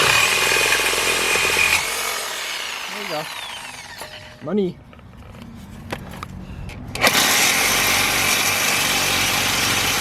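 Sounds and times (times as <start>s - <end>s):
power saw cutting metal pipe: 0.0s - 4.5s, 7.0s - 10.0s.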